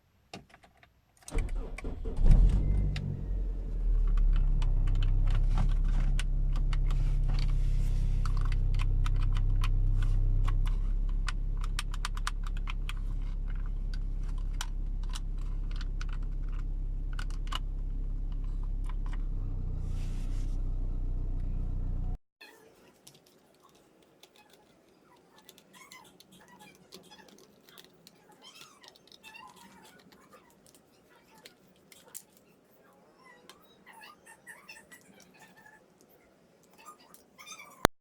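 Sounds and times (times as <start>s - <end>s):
idling car hum: 1.5s - 22.2s.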